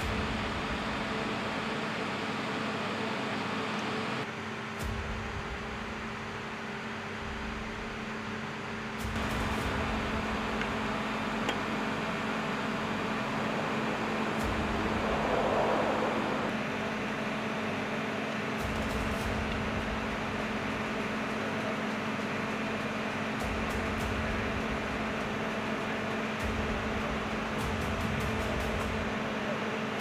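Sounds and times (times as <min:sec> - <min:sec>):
mechanical hum and hiss: 0:00.0 - 0:30.0
deep rumble: 0:09.0 - 0:21.2.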